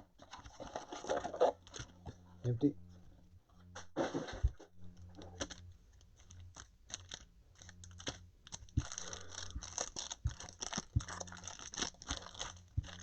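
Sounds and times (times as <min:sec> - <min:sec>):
low steady hum: 0:00.0 - 0:13.0
packaging crinkling: 0:05.1 - 0:13.0.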